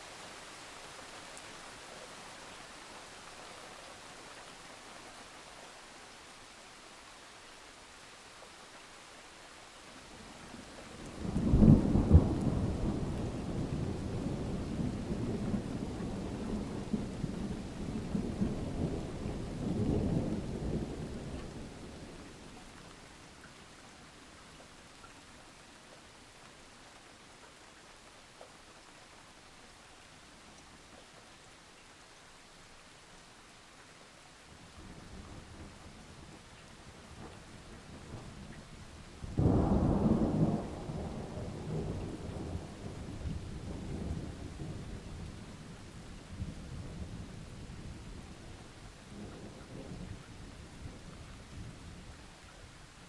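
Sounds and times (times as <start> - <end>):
steady rain: 0.0 - 53.0
thunder clap and rumble: 39.3 - 45.4.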